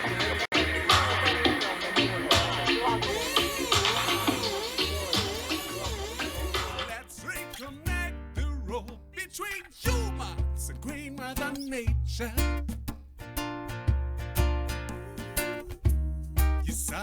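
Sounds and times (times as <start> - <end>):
deep bass notes: 0.0 - 7.0
strummed acoustic guitar: 0.0 - 17.0.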